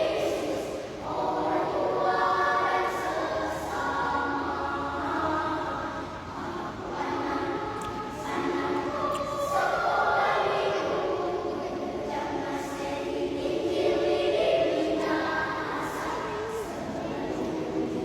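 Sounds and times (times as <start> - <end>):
small choir singing in harmony: 0.0 - 18.0.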